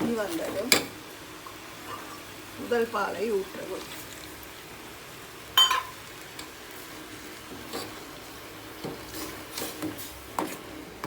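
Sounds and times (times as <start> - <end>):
pot being stirred: 0.0 - 2.4, 5.6 - 11.0
metal utensil clinking pot: 5.6 - 6.0.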